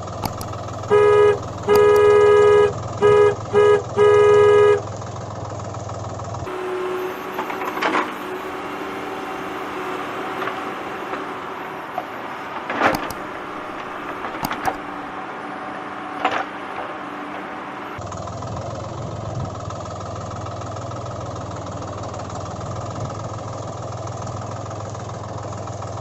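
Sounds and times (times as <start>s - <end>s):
plastic clicks and knocks: 0.2s - 0.5s, 12.6s - 13.2s, 13.8s - 14.8s.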